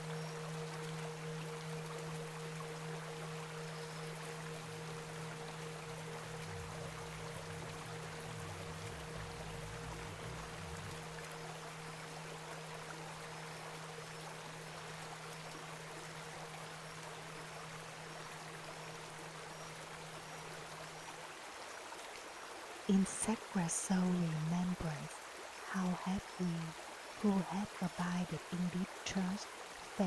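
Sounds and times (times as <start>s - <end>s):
low music drone: 0.0s - 20.9s
steady rain: 0.0s - 30.0s.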